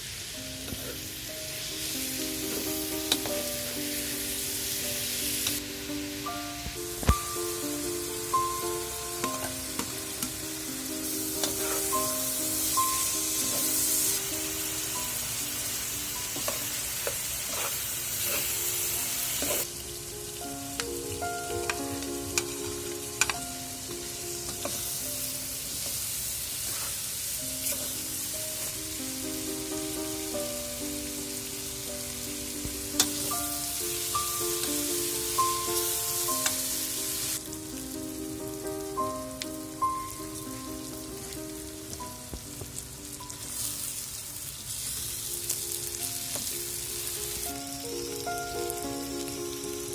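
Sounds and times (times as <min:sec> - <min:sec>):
food sizzling in oil: 0:00.0 - 0:49.9
background music: 0:00.4 - 0:17.2, 0:18.0 - 0:25.9, 0:27.3 - 0:44.5, 0:45.1 - 0:49.9
utensil clicking against pan: 0:23.2 - 0:23.4.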